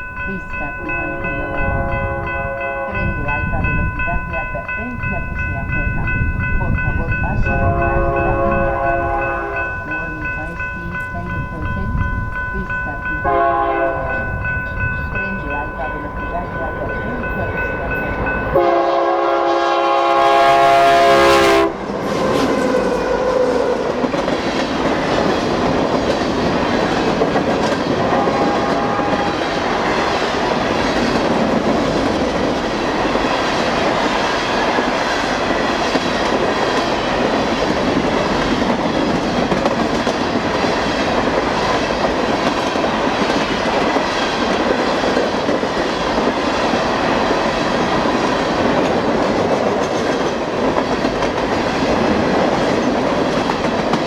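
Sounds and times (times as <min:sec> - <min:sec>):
train cars rumbling: 0:00.0 - 0:54.0
train horn blast: 0:00.3 - 0:03.9, 0:07.4 - 0:11.8, 0:13.2 - 0:14.3, 0:16.3 - 0:24.0, 0:28.0 - 0:30.2
wheels clacking over rail joints: 0:21.9 - 0:28.1.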